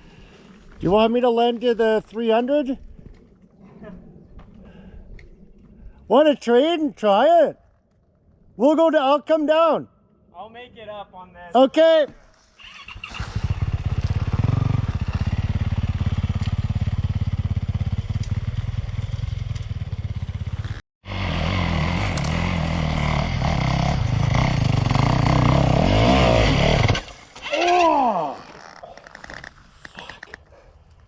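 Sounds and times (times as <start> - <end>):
dirt bike engine revving: 12.7 - 28.1.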